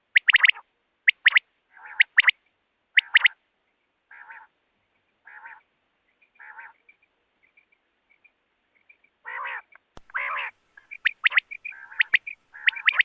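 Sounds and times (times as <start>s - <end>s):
quail calling: 0.0s - 2.4s, 3.0s - 3.4s, 4.1s - 4.6s, 5.2s - 5.7s, 6.3s - 6.9s, 9.2s - 13.0s
faint chirps: 0.0s - 13.0s.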